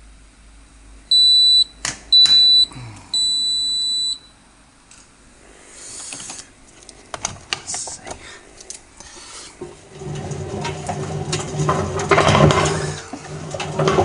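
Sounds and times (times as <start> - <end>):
washing machine high beeps: 1.1 - 4.4.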